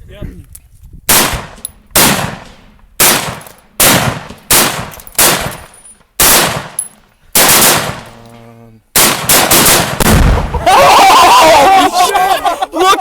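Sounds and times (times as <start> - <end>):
gunshots: 1.1 - 6.8, 7.4 - 8.2, 9.0 - 10.7.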